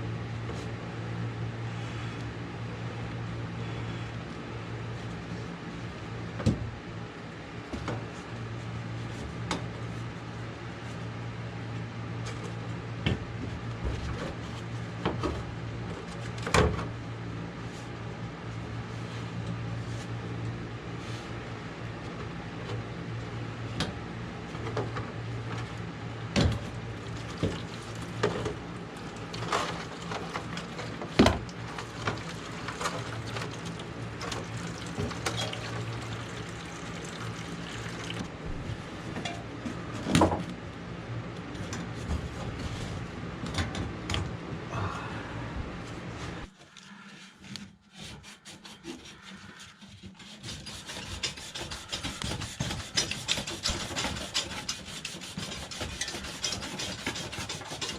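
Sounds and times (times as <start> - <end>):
low steady hum: 0.0 - 47.8
rapid rasping strokes: 47.8 - 57.9.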